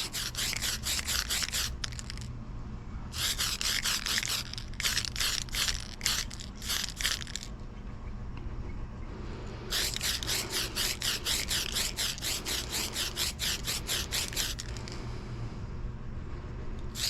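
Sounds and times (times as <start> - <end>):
spray can rattling when shaken: 0.0 - 2.3, 3.2 - 7.6, 9.7 - 15.0.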